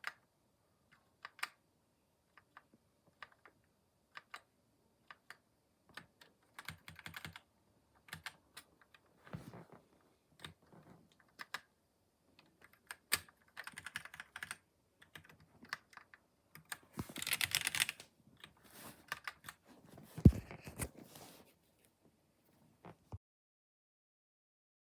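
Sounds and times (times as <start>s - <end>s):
mechanical keyboard key clacks: 12.7s - 18.0s.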